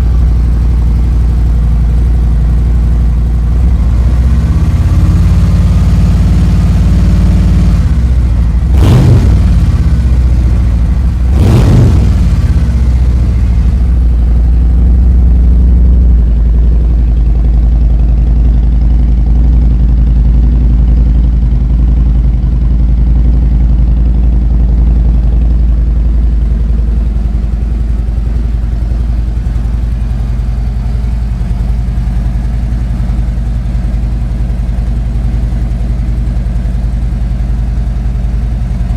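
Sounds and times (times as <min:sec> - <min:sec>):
motorcycle engine revving and idling: 0:00.0 - 0:38.9.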